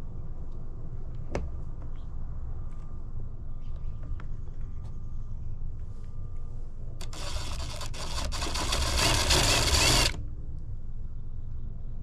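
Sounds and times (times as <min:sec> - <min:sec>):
drill grinding through metal panel: 0:07.0 - 0:10.2.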